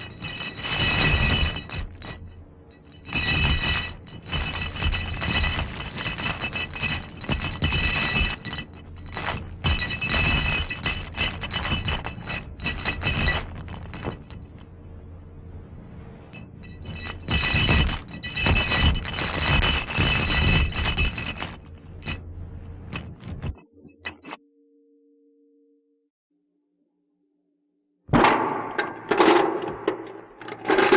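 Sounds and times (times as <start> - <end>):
clinking metallic jangling rattle: 0.0 - 14.7, 16.2 - 22.2, 22.8 - 24.4, 28.8 - 30.9.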